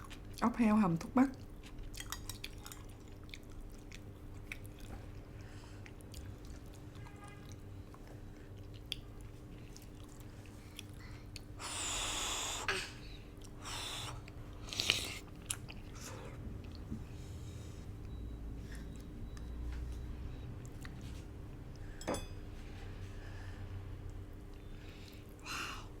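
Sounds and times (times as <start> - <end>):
soft chewing mouth sounds: 0.0 - 0.6, 1.2 - 11.7, 12.6 - 22.0, 24.0 - 25.5
loud breathy bursts: 11.6 - 13.0.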